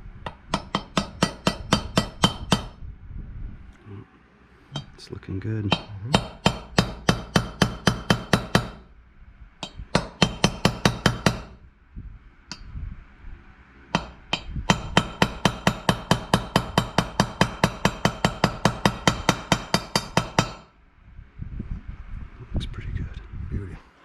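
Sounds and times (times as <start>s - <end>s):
hammer tapping on metal: 0.3s - 2.8s, 4.7s - 5.0s, 5.7s - 8.8s, 9.6s - 11.6s, 13.9s - 20.7s.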